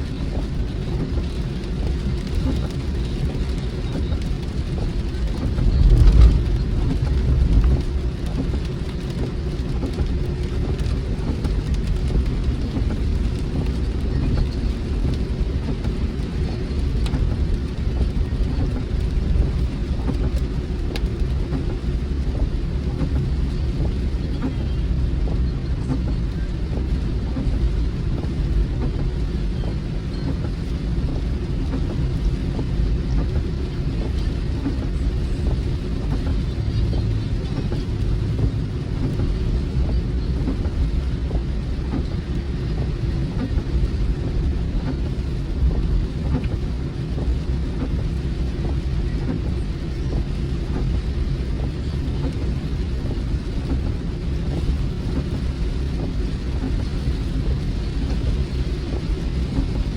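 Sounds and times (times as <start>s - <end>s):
rain tapping on car: 0.0s - 59.9s
road and engine rumble: 0.0s - 59.9s.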